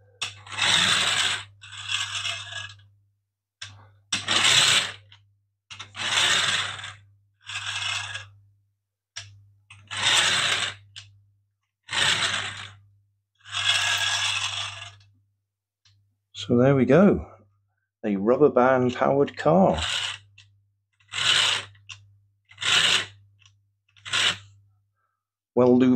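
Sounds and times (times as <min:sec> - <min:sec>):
toy car rattling and scraping: 0:00.1 - 0:02.9, 0:03.6 - 0:08.4, 0:09.2 - 0:11.2, 0:11.8 - 0:15.1, 0:18.4 - 0:24.6.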